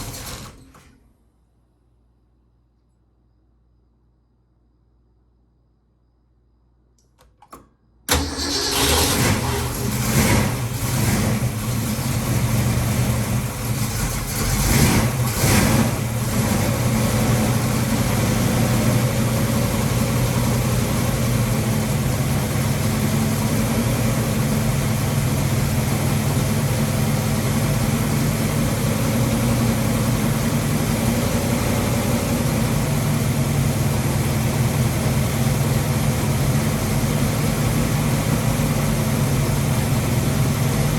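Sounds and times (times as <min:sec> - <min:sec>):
car engine revving and idling: 0:08.4 - 0:40.9.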